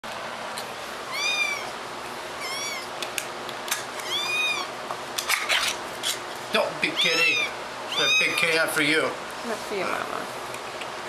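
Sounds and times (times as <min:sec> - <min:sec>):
kitten meowing: 0:01.1 - 0:01.8, 0:02.4 - 0:02.9, 0:04.0 - 0:04.7, 0:06.9 - 0:08.6.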